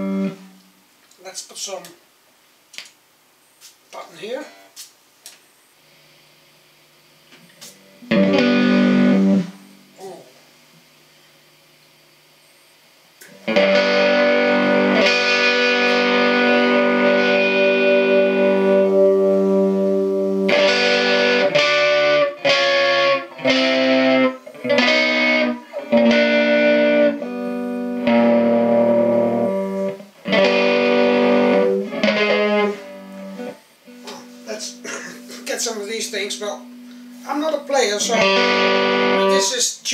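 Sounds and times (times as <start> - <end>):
distorted electric guitar chords: 0.0 - 0.8, 7.6 - 10.4, 13.2 - 39.7.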